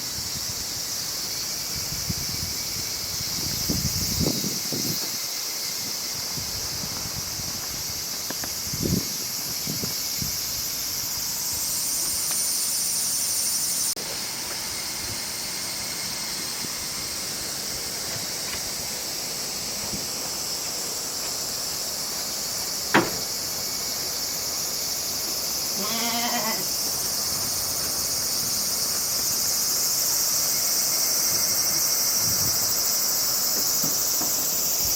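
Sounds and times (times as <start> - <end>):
insects chirring: 0.0 - 34.9
short sharp knock: 22.9 - 23.3.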